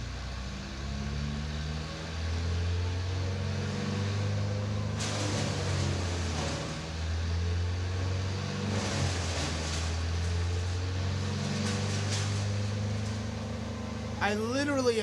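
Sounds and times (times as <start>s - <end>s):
large engine droning: 0.0s - 15.0s.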